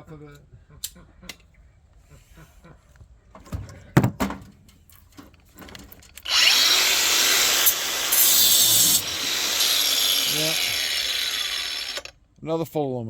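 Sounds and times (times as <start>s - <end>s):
power drill-driver running: 6.2s - 12.1s.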